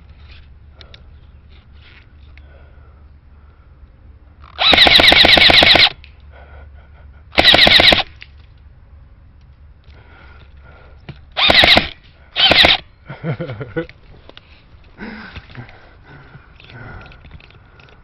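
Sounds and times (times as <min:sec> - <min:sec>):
airsoft gun full-auto bursts: 0:04.6 - 0:06.0, 0:07.4 - 0:08.1, 0:11.4 - 0:12.8.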